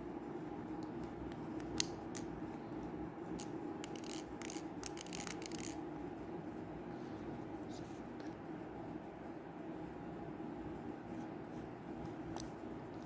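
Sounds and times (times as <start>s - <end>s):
steady low hum: 0.0s - 13.0s
speed cube clicking and scraping: 3.4s - 5.8s.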